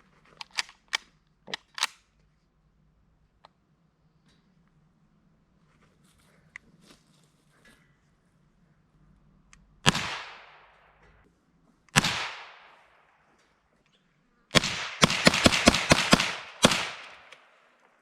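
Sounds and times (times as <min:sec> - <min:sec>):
gunshots echoing: 0:09.8 - 0:11.0, 0:12.0 - 0:13.2, 0:14.5 - 0:17.8.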